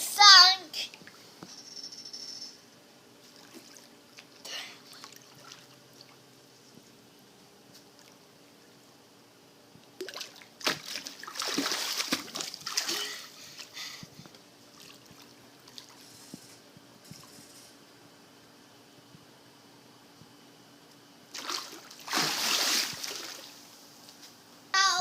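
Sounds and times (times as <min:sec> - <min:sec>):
water splashing and sloshing: 0:03.2 - 0:06.3, 0:09.8 - 0:13.8, 0:14.6 - 0:16.1, 0:21.3 - 0:23.7.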